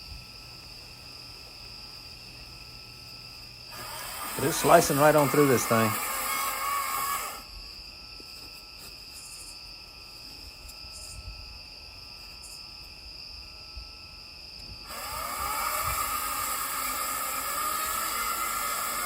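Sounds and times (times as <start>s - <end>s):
insects droning: 0.0s - 19.0s
electric chainsaw motor whining: 3.7s - 7.5s, 14.8s - 19.0s.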